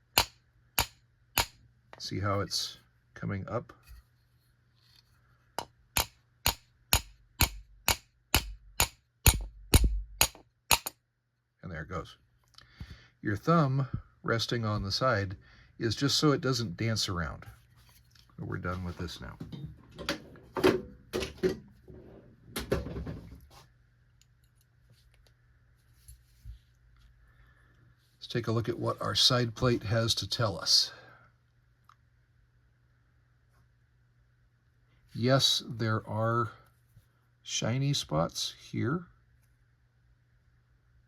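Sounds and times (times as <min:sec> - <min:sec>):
hammer handle knocking on revolver: 0:05.6 - 0:10.9
tools clattering on a workbench: 0:19.4 - 0:21.7.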